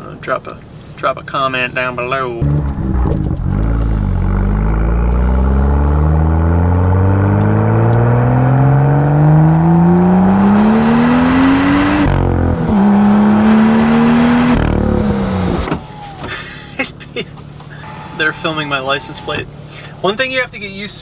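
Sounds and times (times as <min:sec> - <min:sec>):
car engine accelerating: 0:02.4 - 0:16.4.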